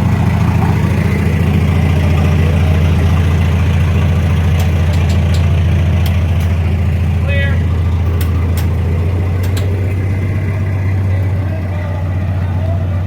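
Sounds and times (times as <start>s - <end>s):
vehicle engine humming: 0.0s - 13.0s
sharp clicks: 4.2s - 7.0s, 8.0s - 10.1s.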